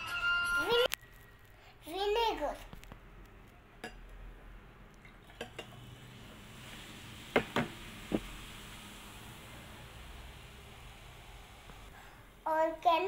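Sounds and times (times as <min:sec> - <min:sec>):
faint fizzing hiss: 0:05.2 - 0:12.8.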